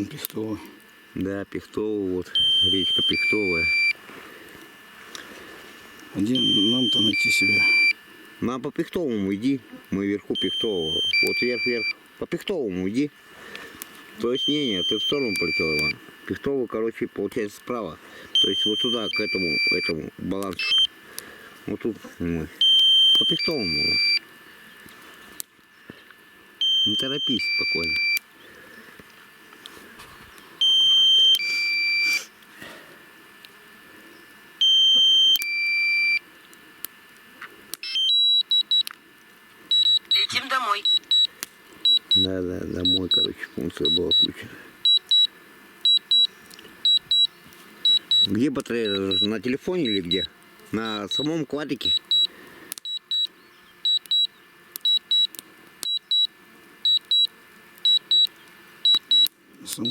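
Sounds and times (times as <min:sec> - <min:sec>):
two-part electronic warning beep: 0:02.3 - 0:04.0, 0:06.2 - 0:08.0, 0:10.4 - 0:12.0, 0:14.2 - 0:16.0, 0:18.4 - 0:20.9, 0:22.6 - 0:24.2, 0:26.6 - 0:28.2, 0:30.6 - 0:32.2, 0:34.6 - 0:36.2, 0:37.8 - 0:38.9, 0:39.7 - 0:59.3
rapid short beeps: 0:02.4 - 0:04.0, 0:06.2 - 0:08.0, 0:10.4 - 0:12.0, 0:14.3 - 0:16.0, 0:18.4 - 0:20.0, 0:20.6 - 0:20.9, 0:22.6 - 0:24.2, 0:26.6 - 0:28.2, 0:30.6 - 0:32.2, 0:39.7 - 0:45.3, 0:45.9 - 0:50.3, 0:50.9 - 0:51.3, 0:51.9 - 0:52.3, 0:52.9 - 0:56.3, 0:56.9 - 0:59.3
high-pitched double beeps: 0:06.4 - 0:07.9, 0:10.4 - 0:11.9
sharp clicks: 0:37.7 - 0:39.0, 0:51.9 - 0:56.3.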